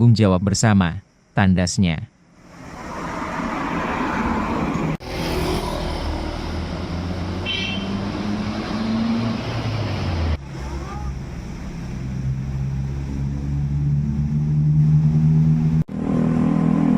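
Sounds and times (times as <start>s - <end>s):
road traffic: 2.1s - 16.9s.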